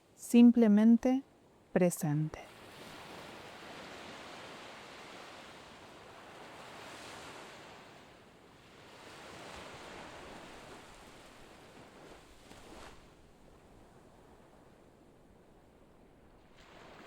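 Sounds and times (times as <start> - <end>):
waves washing on shore: 2.5 - 14.4, 16.4 - 17.0.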